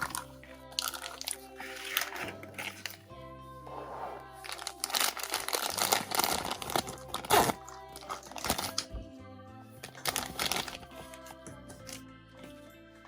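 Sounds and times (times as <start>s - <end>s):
background music: 0.0s - 13.0s
plastic wrapper tearing and crinkling: 4.4s - 8.8s, 10.0s - 10.8s.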